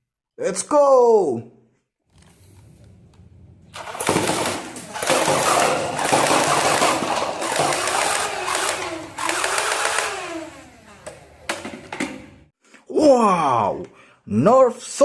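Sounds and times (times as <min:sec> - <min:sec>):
toy gun machine-gun sound effect: 0:03.8 - 0:10.4.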